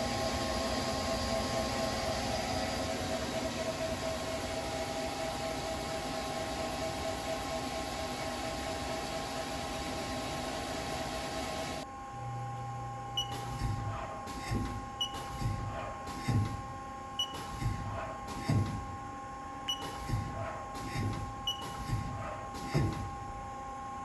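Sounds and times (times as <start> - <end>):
lathe mechanical whir: 0.0 - 12.4
steady machine tones: 0.0 - 23.4.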